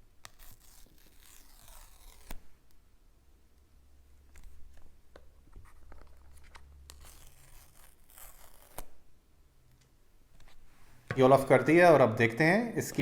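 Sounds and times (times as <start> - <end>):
plastic wrapping tearing: 0.2 - 2.4, 6.3 - 9.0.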